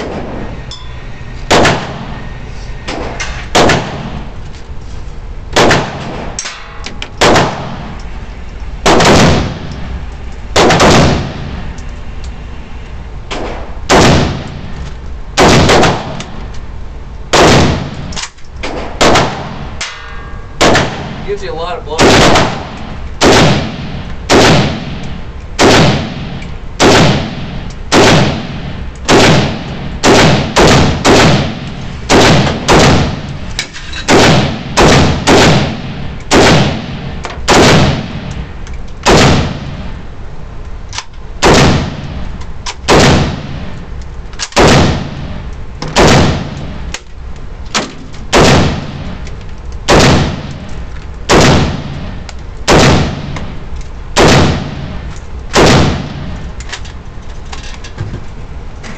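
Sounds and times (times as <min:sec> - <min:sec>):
rifle shots: 0:01.5 - 0:02.2, 0:02.9 - 0:04.3, 0:05.5 - 0:06.4, 0:07.2 - 0:08.0, 0:08.8 - 0:09.7, 0:10.5 - 0:11.6, 0:13.3 - 0:14.7, 0:15.4 - 0:16.3, 0:17.3 - 0:19.7, 0:20.6 - 0:21.4, 0:22.0 - 0:33.4, 0:34.0 - 0:40.0, 0:41.4 - 0:43.8, 0:44.4 - 0:46.9, 0:47.8 - 0:49.2, 0:49.8 - 0:53.6, 0:54.2 - 0:56.4.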